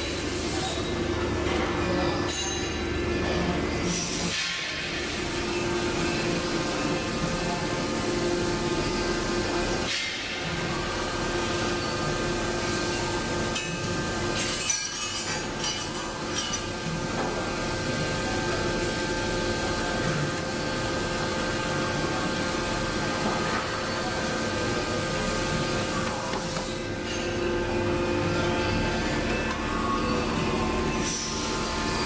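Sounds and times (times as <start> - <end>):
factory machinery hum: 0.0 - 32.0.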